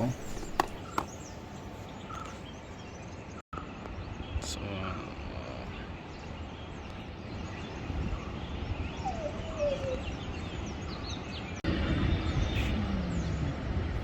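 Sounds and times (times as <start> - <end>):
low falling bird call: 0.0 - 1.4
small birds chirping: 0.0 - 14.0.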